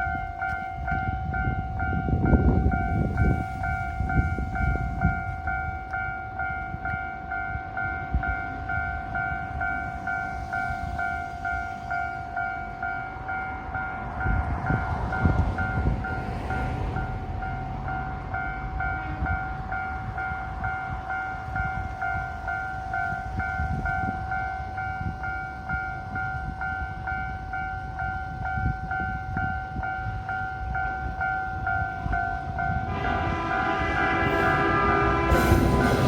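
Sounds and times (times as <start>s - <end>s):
steady low tone: 31.4s - 36.0s
level crossing alarm dinging: 31.5s - 36.0s
second alarm tone: 32.8s - 36.0s.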